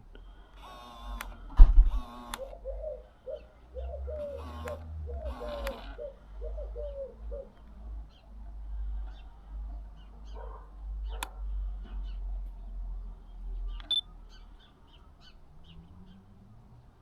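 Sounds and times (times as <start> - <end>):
low rumble on microphone: 1.5 - 2.2
higher bird calls: 2.1 - 8.3
pigeon cooing: 2.2 - 8.2.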